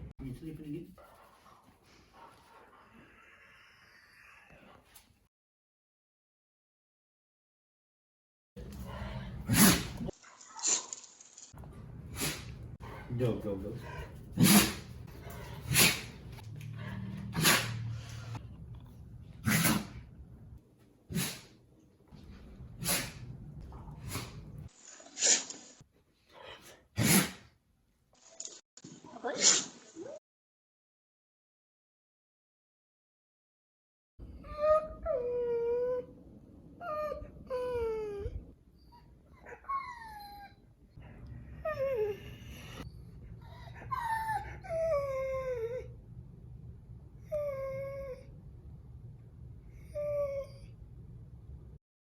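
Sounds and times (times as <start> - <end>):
pet sneezing: 9.5 - 10.9, 12.1 - 12.5, 14.4 - 14.9, 15.6 - 16.2, 17.3 - 18.0, 19.4 - 20.0, 21.1 - 21.6, 22.8 - 23.3, 24.0 - 24.4, 27.0 - 27.5, 29.0 - 30.1
dog whining: 34.4 - 36.2, 36.8 - 40.7, 41.6 - 46.0, 47.2 - 48.3, 49.7 - 50.8.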